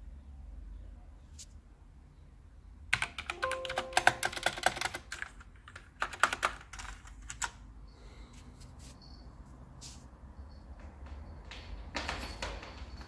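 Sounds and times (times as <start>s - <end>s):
mechanical keyboard typing: 2.9s - 7.6s.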